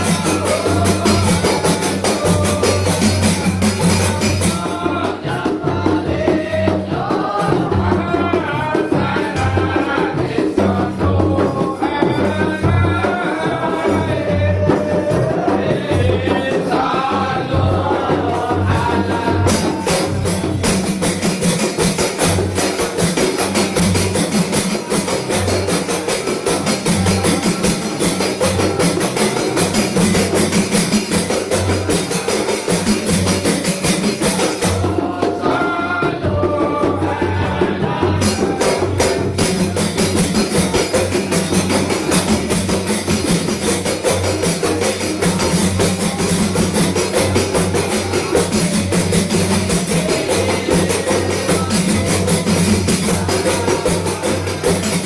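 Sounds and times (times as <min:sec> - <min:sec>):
sharp high drum slaps: 0:00.0 - 0:05.4, 0:18.4 - 0:55.0
frame drums playing: 0:00.0 - 0:55.0.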